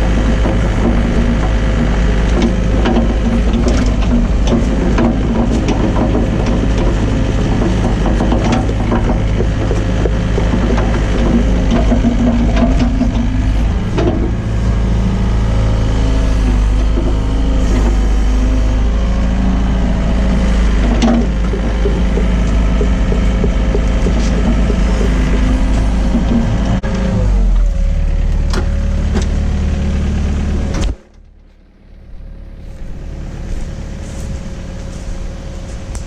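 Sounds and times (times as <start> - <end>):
excavator diesel engine running: 0.0 - 36.0
sharp knocks: 4.5 - 13.4, 20.9 - 26.8.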